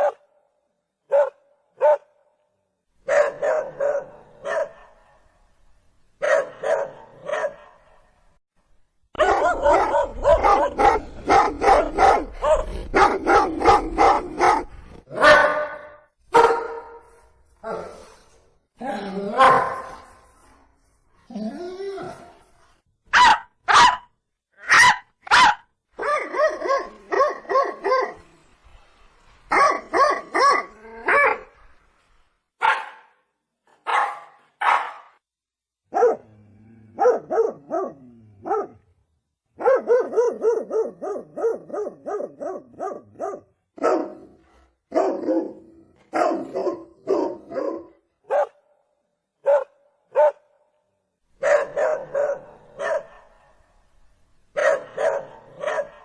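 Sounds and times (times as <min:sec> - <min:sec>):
dogs barking: 0:03.1 - 0:05.1, 0:06.2 - 0:07.8, 0:09.2 - 0:16.9, 0:23.2 - 0:24.1, 0:33.8 - 0:35.1, 0:35.9 - 0:36.3, 0:37.0 - 0:38.8, 0:39.6 - 0:44.2, 0:44.9 - 0:48.6, 0:49.4 - 0:50.5, 0:51.4 - 0:53.4, 0:54.6 - 0:56.0.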